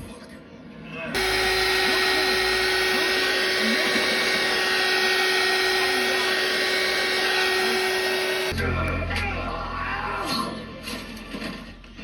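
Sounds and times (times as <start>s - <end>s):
small electric motor whirring: 1.2s - 8.6s.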